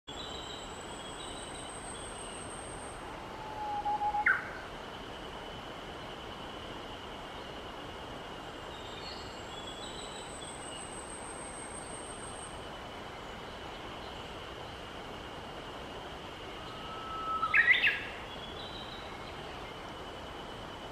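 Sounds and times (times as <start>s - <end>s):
bird singing whistled notes: 0.1s - 4.7s, 16.6s - 19.6s
faint high-pitched tones: 1.4s - 5.5s, 16.4s - 20.8s.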